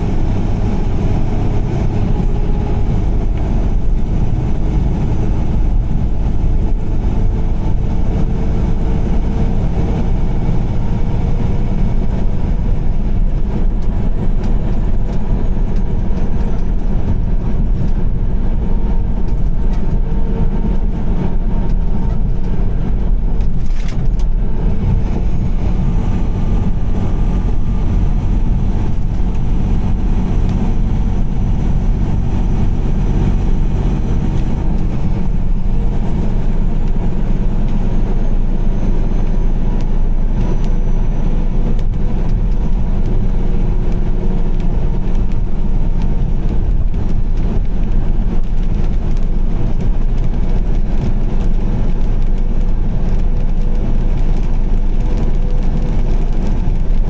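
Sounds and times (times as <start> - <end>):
car road and engine rumble: 0.0 - 57.0.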